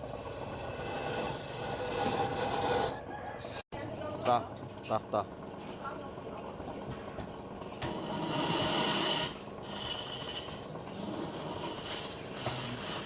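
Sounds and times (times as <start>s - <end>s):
chisel scraping spinning wood: 0.0s - 3.6s, 7.7s - 13.0s
wood lathe spinning: 0.0s - 3.6s, 7.5s - 13.0s.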